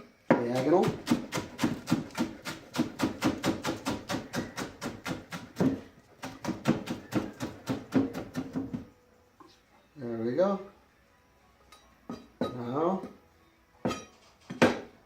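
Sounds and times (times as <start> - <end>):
knife chopping on cutting board: 0.4 - 8.9.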